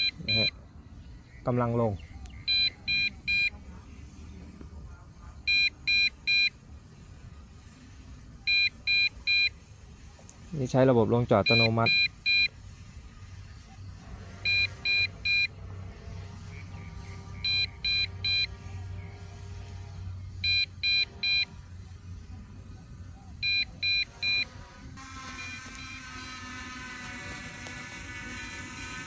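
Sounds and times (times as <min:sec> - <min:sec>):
remote controller warning beeps: 0:00.0 - 0:00.6, 0:02.4 - 0:03.6, 0:05.4 - 0:06.6, 0:08.5 - 0:09.6, 0:11.4 - 0:12.5, 0:14.4 - 0:15.6, 0:17.4 - 0:18.6, 0:20.4 - 0:21.6, 0:23.2 - 0:24.6, 0:25.3 - 0:26.5
drone whirring: 0:01.9 - 0:29.0.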